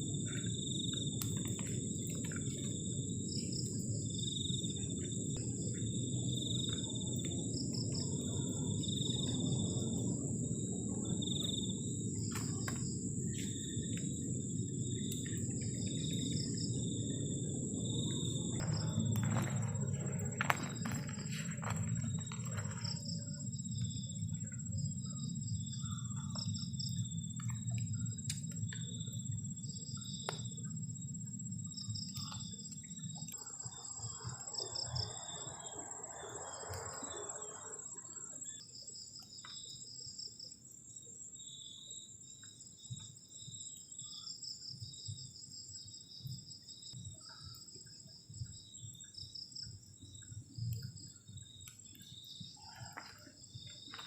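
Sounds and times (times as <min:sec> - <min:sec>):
low rumble: 0:00.0 - 0:26.1
crickets chirping: 0:00.0 - 0:54.0
high insect trill: 0:00.0 - 0:54.0.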